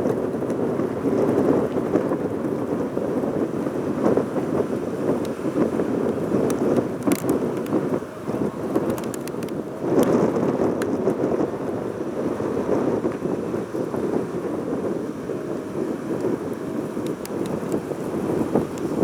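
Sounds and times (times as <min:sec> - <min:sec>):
wind buffeting microphone: 0:00.0 - 0:19.0
faint clicks: 0:06.4 - 0:07.8, 0:08.7 - 0:10.2, 0:17.0 - 0:17.9, 0:18.5 - 0:19.0.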